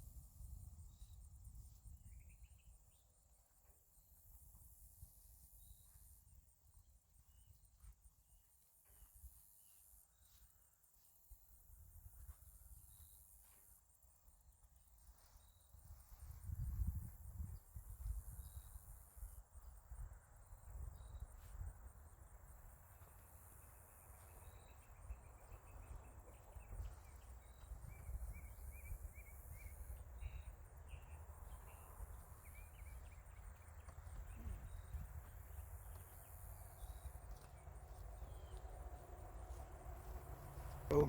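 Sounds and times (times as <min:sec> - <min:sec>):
crickets trilling: 0:17.3 - 0:41.0.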